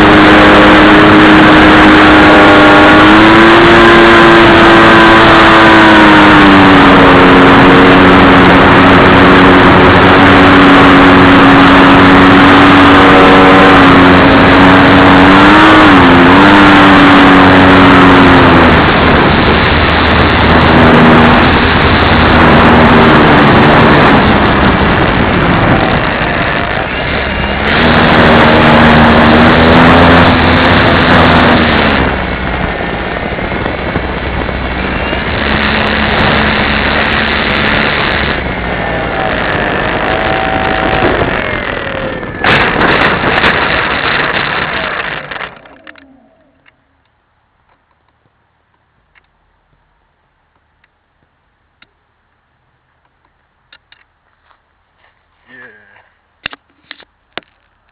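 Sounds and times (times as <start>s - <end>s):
model plane motor whine: 0.0s - 46.9s
rushing air: 0.0s - 47.6s.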